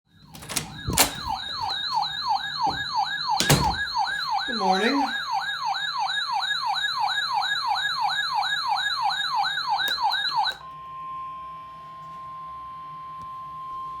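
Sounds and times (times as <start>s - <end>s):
steady alarm tone: 0.1s - 13.2s
electronic siren sweeping downward: 1.1s - 13.2s.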